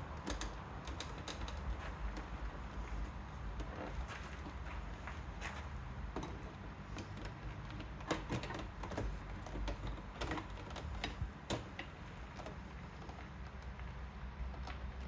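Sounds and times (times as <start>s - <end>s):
clicks on plastic door trim: 6.2s - 12.7s.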